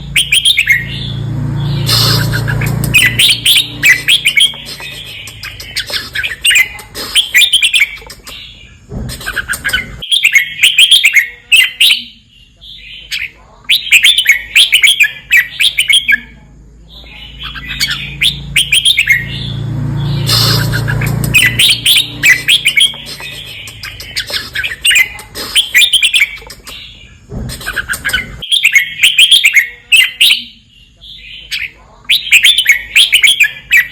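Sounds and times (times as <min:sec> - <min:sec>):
bird chirping song: 0:00.0 - 0:33.9
rushing noise: 0:00.2 - 0:07.4, 0:17.8 - 0:24.8.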